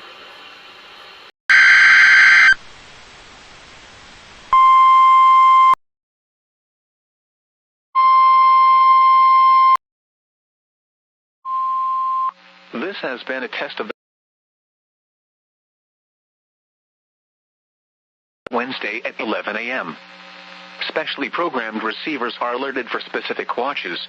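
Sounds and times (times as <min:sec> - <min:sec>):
faint radio static: 0:18.5 - 0:24.0.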